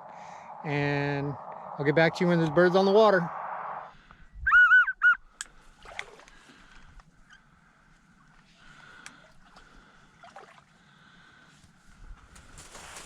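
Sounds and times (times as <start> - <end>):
low steady hum: 0.0 - 12.8
faint water sounds: 5.4 - 13.0.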